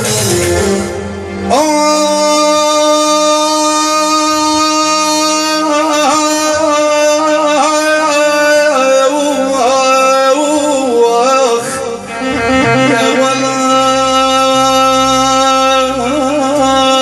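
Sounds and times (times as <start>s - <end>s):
low bass part: 0.0s - 2.8s.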